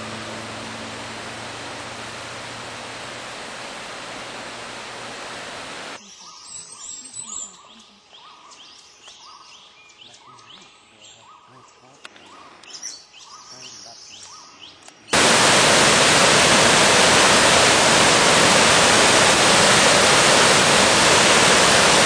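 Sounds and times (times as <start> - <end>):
loud steady rushing noise: 0.0 - 6.0, 15.2 - 22.0.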